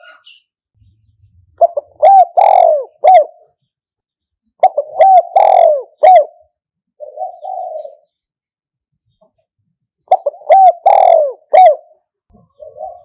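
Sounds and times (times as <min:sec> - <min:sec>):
rough bird call: 0:00.0 - 0:03.6, 0:04.6 - 0:06.4, 0:10.1 - 0:13.0
dove cooing: 0:01.4 - 0:03.6, 0:04.6 - 0:08.2, 0:10.0 - 0:13.0.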